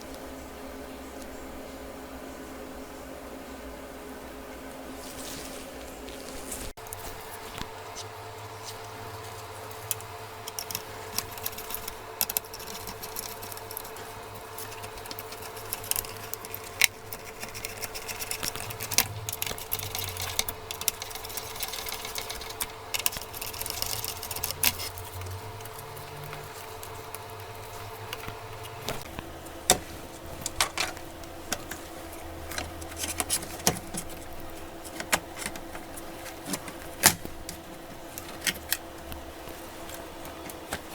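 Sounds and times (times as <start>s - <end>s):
steady mechanical hum: 0.0s - 40.9s
tools and parts clicking: 9.7s - 29.1s, 32.4s - 40.9s.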